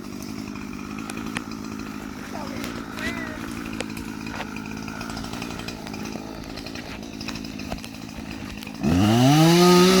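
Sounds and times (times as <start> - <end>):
chainsaw idling and revving: 0.0 - 10.0.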